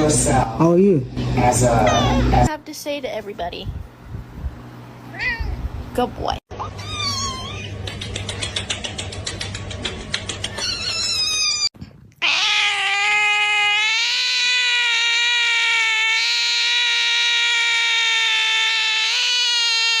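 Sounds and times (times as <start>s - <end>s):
cat yowling: 5.1s - 5.6s, 6.6s - 7.8s, 10.6s - 20.0s.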